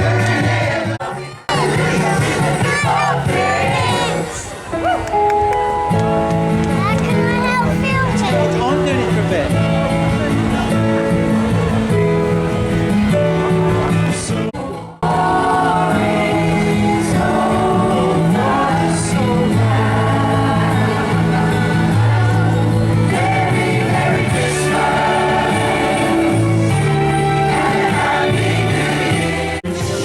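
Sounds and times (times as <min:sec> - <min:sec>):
choir singing: 0:00.0 - 0:04.5, 0:14.2 - 0:30.0.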